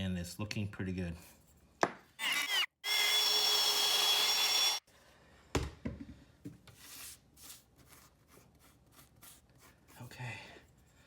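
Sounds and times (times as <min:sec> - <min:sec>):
power drill boring into wood: 0:02.2 - 0:04.8.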